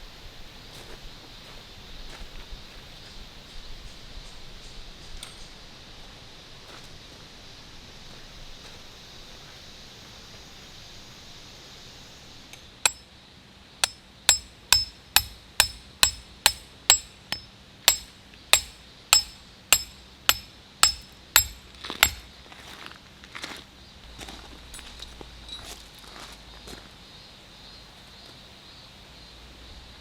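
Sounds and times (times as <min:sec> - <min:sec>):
hammer striking metal tent peg: 0:13.8 - 0:22.3.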